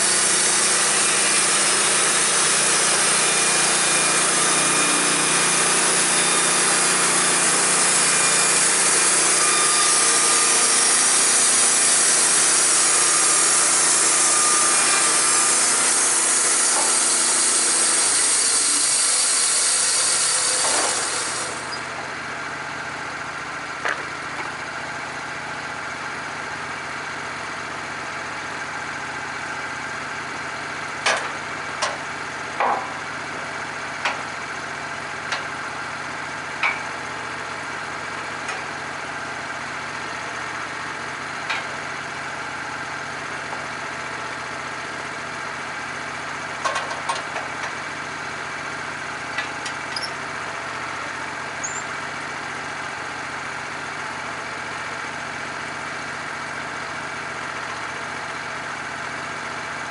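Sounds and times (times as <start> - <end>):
sawmill engine running: 0.0 - 59.9
sharp knocks and clatters: 23.8 - 24.6, 31.0 - 32.0, 32.6 - 33.0.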